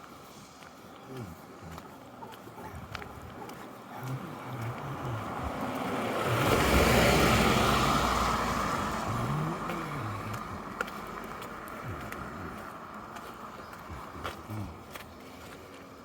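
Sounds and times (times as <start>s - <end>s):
car passing by: 4.0s - 14.0s.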